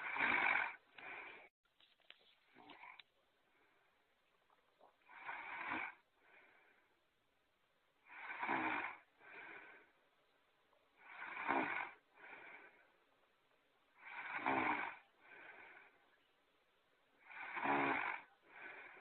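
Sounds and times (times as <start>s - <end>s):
cartoon snoring: 0.0s - 1.2s, 5.1s - 6.0s, 8.0s - 9.8s, 11.0s - 12.6s, 14.0s - 15.9s, 17.2s - 19.0s.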